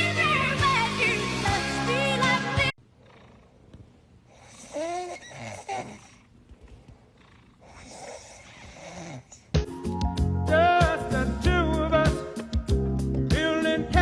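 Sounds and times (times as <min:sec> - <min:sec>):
music: 0:00.0 - 0:02.7, 0:09.6 - 0:14.0.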